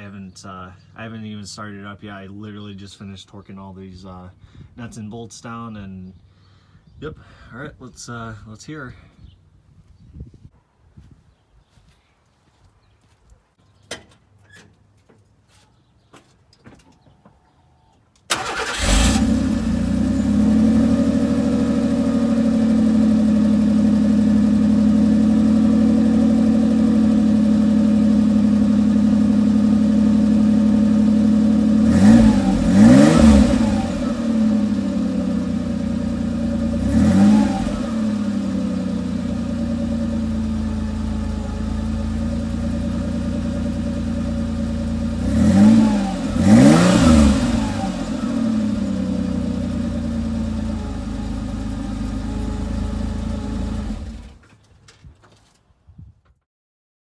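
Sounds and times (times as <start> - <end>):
engine revving in short blips: 18.3 - 22.5, 30.7 - 35.6, 36.4 - 38.9, 45.0 - 49.6
truck engine starting and idling: 18.3 - 54.7.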